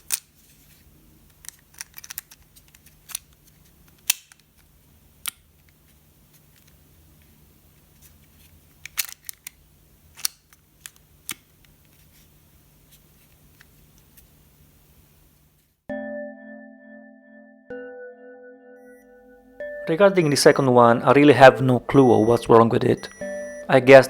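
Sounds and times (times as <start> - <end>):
faint steady low hum: 0.0 - 15.9, 19.5 - 24.0.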